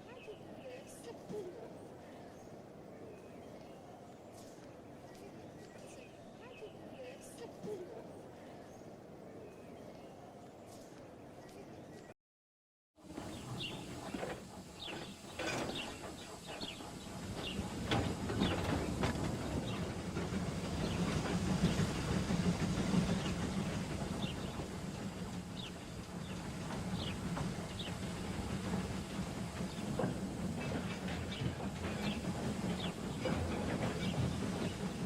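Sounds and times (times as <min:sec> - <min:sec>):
train rumbling on rails: 0:00.0 - 0:12.1, 0:13.0 - 0:35.0
wheels clicking over track: 0:13.0 - 0:35.0.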